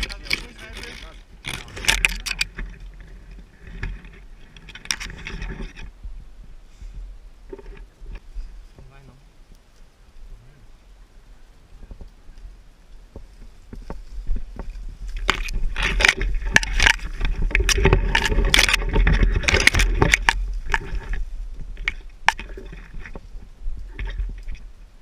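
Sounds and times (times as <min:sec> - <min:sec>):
irregular knocks and scrapes: 0:00.0 - 0:05.9, 0:06.8 - 0:08.9, 0:13.1 - 0:24.7.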